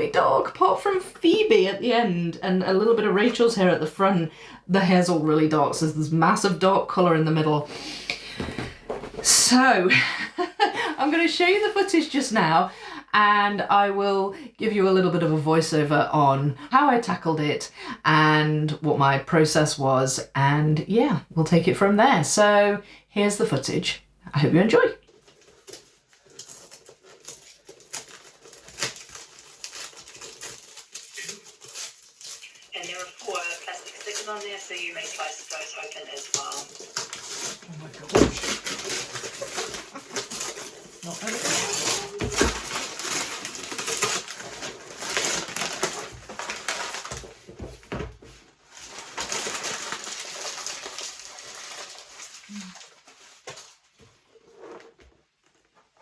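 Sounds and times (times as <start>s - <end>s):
cardboard puzzle pieces rustling: 25.1s - 54.8s.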